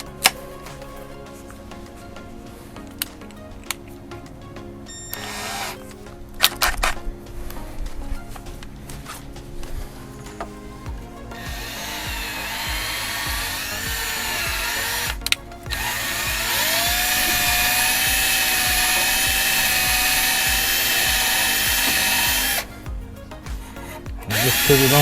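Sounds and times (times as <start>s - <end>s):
electric drill whining: 4.9s - 5.8s, 10.3s - 25.0s.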